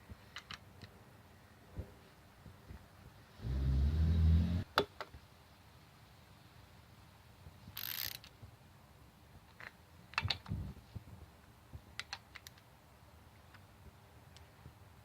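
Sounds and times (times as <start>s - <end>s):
metal tools clicking: 7.8s - 8.3s.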